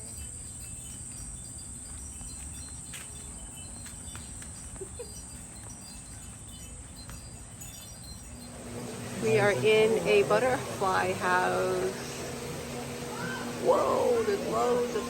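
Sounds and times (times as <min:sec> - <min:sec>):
insects chirring: 0:00.0 - 0:10.2.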